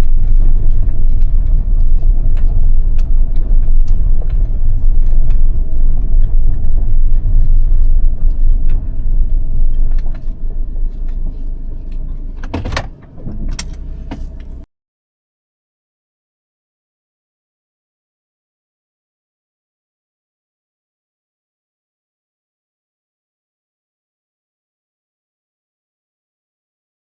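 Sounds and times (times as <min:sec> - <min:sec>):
car engine low rumble: 0:00.0 - 0:14.7.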